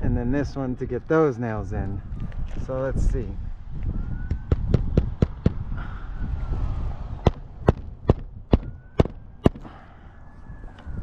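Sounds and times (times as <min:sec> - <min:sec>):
hammer striking shingle roof: 0:07.2 - 0:09.6.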